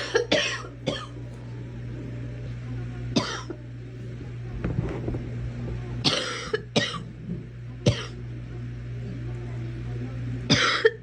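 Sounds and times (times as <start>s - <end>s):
girl coughing: 0.0s - 1.2s, 3.2s - 3.6s, 6.0s - 7.1s, 7.8s - 8.2s, 10.5s - 11.0s
steady low hum: 0.0s - 11.0s.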